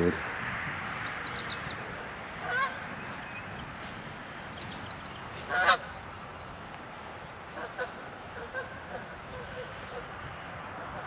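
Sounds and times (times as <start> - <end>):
small birds chirping: 0.0 - 7.7
steady outdoor hiss: 0.0 - 11.0
goose honking: 2.4 - 2.8, 5.5 - 5.9, 7.5 - 10.1.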